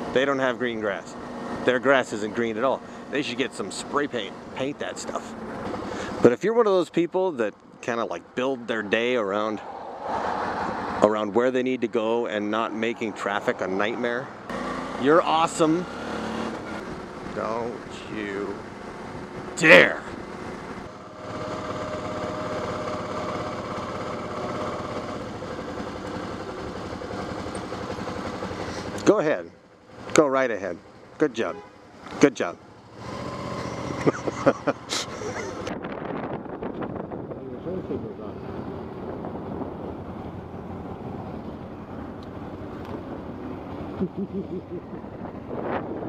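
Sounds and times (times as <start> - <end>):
wind rushing over microphone: 9.4 - 11.0, 35.4 - 41.3, 44.8 - 46.0
motorcycle engine running: 14.4 - 31.2.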